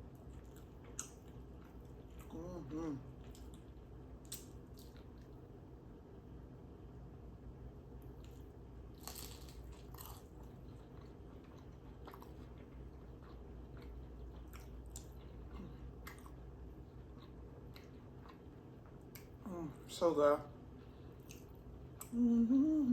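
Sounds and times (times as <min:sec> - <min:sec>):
chewing with wet mouth clicks: 0:00.1 - 0:02.4, 0:03.1 - 0:05.4, 0:08.0 - 0:19.4, 0:21.2 - 0:22.1
crisp crunches: 0:09.0 - 0:10.3.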